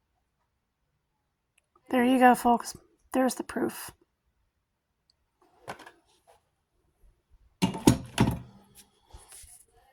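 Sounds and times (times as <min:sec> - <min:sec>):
handling knocks and thumps: 0:07.6 - 0:08.8.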